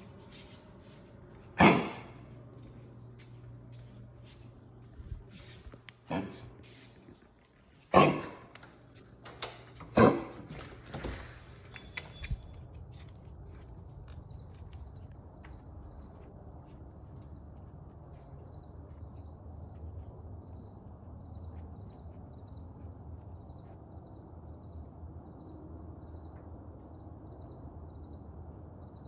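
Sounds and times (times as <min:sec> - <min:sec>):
insects pulsing chirp: 0:11.8 - 0:29.0.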